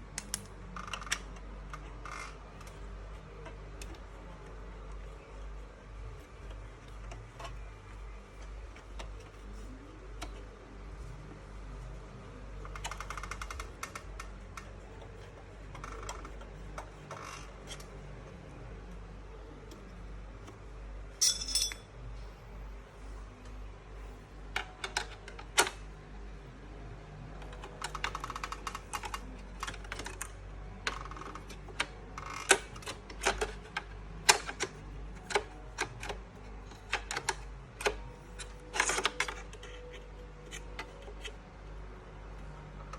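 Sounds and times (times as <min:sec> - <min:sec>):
metallic clatter: 0:21.2 - 0:21.9.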